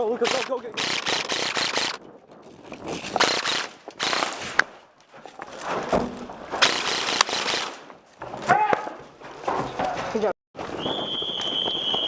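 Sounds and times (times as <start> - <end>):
sharp clicks: 0.0 - 2.0, 6.6 - 7.8.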